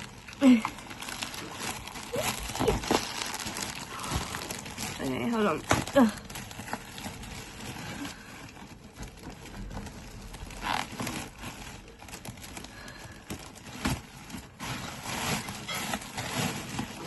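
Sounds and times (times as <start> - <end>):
packaging rustling and tearing: 0.0 - 17.0.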